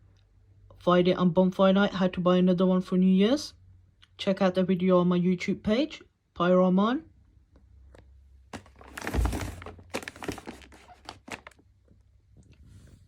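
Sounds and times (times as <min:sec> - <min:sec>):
knocks and rustles: 0:08.5 - 0:11.4
heavy thunk of box: 0:08.6 - 0:09.8.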